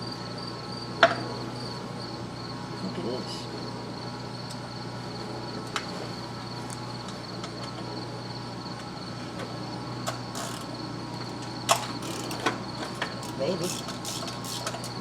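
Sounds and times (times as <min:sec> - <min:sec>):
hand tool scraping: 0:11.7 - 0:15.0
metal hand tools clicking: 0:11.7 - 0:15.0.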